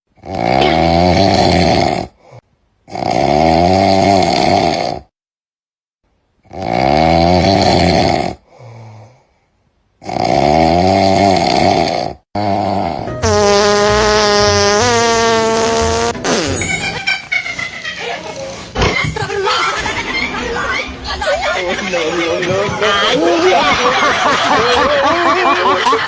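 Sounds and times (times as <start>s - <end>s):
man snoring loudly: 0.2s - 5.1s, 6.4s - 9.2s, 10.0s - 16.2s.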